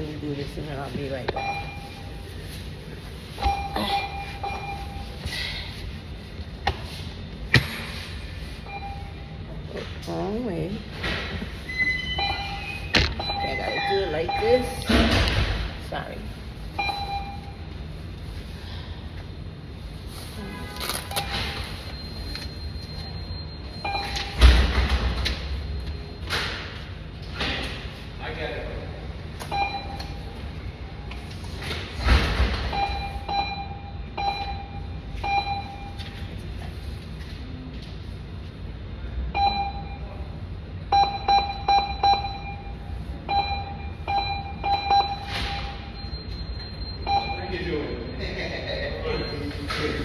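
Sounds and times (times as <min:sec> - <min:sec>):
short electronic beeps: 0:03.4 - 0:05.2, 0:11.6 - 0:14.9, 0:21.1 - 0:24.7, 0:40.9 - 0:48.2.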